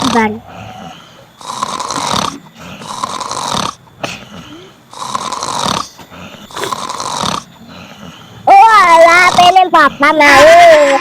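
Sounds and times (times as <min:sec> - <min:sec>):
man snoring: 0:00.0 - 0:08.2.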